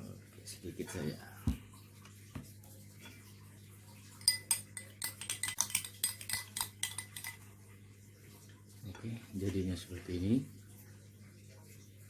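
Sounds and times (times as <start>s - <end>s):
spoon clinking against container: 4.1s - 7.5s.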